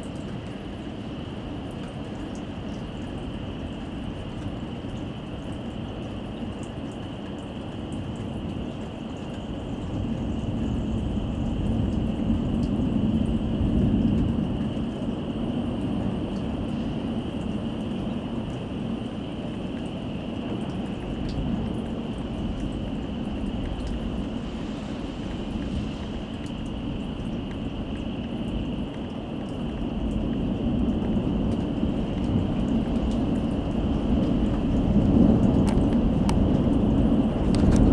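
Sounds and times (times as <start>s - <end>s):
steady rain: 0.0s - 37.9s
low thunder rumble: 29.6s - 37.9s.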